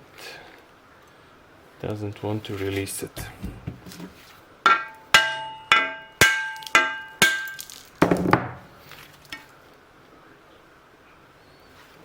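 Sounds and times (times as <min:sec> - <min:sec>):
dull knocks: 0:03.2 - 0:04.2
hammer striking metal: 0:04.7 - 0:08.7.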